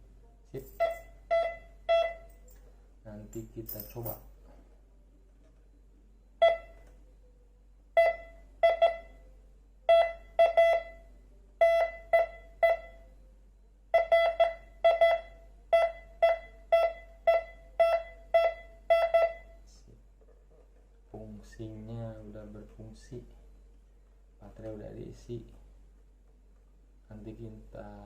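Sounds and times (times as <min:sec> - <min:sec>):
metal detector beeping: 0:00.6 - 0:02.4.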